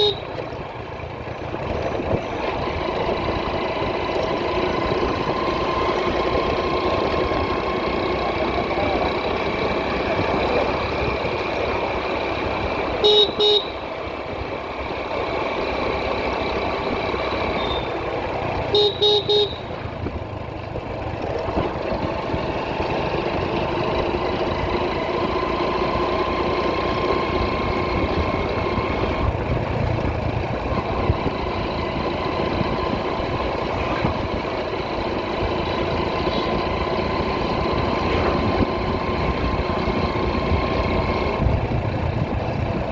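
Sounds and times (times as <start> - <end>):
horn beeps: 0.0 - 0.4, 13.0 - 13.8, 17.5 - 18.0, 18.7 - 19.8
motorcycle engine running: 0.0 - 42.9
road traffic noise: 0.0 - 42.9.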